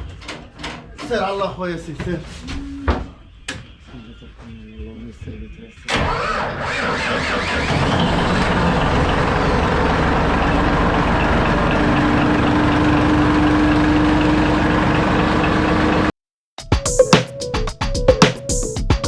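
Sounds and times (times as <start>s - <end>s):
boat engine running: 7.4s - 16.1s.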